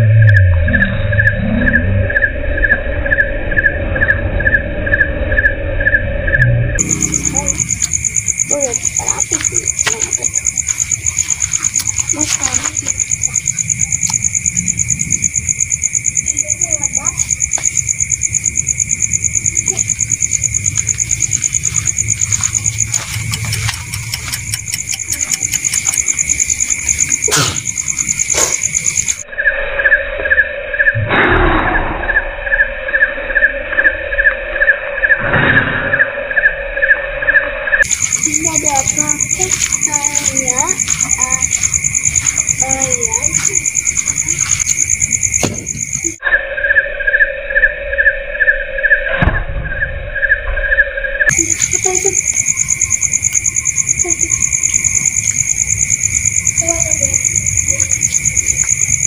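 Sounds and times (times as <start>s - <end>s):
crickets chirping: 0.0s - 31.1s, 31.7s - 59.0s
thump: 49.2s - 49.8s.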